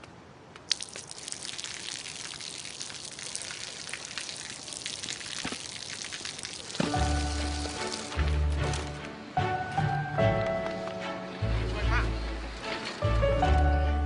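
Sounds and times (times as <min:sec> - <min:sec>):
water hissing and pattering: 0:00.6 - 0:08.7.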